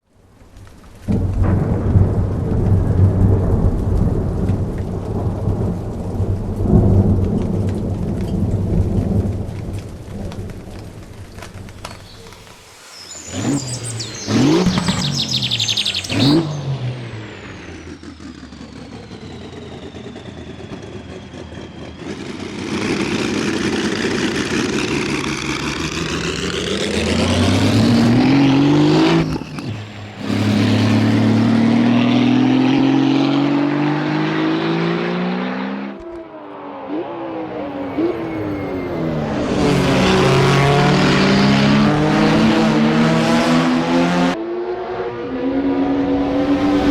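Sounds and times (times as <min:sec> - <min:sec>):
racing car engine revving: 0:12.0 - 0:46.9.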